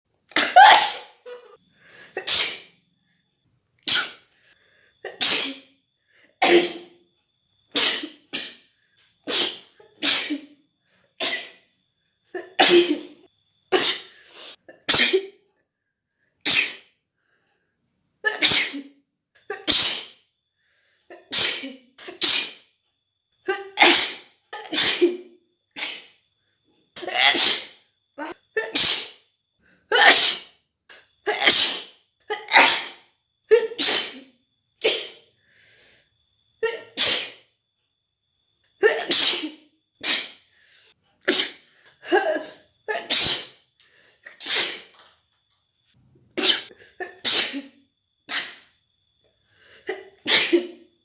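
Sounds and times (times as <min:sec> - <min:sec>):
woman sneezing: 0:00.3 - 0:02.8, 0:03.8 - 0:04.2, 0:05.0 - 0:05.7, 0:06.4 - 0:07.0, 0:07.7 - 0:08.6, 0:09.2 - 0:10.6, 0:11.2 - 0:11.6, 0:12.4 - 0:15.4, 0:16.4 - 0:16.9, 0:18.2 - 0:20.2, 0:21.1 - 0:22.7, 0:23.5 - 0:26.2, 0:27.0 - 0:29.2, 0:29.9 - 0:30.5, 0:31.2 - 0:35.2, 0:36.6 - 0:37.4, 0:38.8 - 0:40.4, 0:41.2 - 0:43.6, 0:44.2 - 0:45.0, 0:46.4 - 0:48.7, 0:49.8 - 0:50.8.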